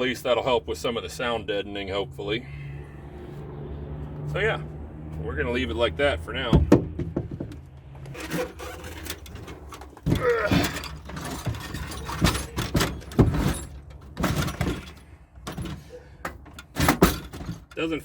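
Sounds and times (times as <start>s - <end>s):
toolbox knocks and clunks: 6.5s - 17.8s
rattling: 6.6s - 17.9s.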